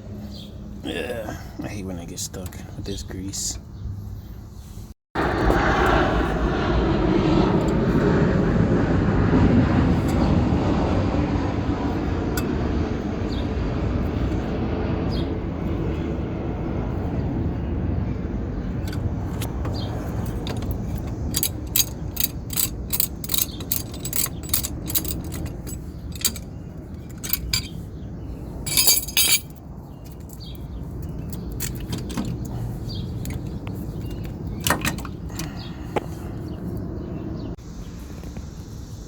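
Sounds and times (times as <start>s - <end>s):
low outdoor rumble: 0.0s - 39.0s
metal tools clinking: 18.8s - 27.9s, 28.6s - 35.5s
short rattling burst: 20.4s - 27.8s.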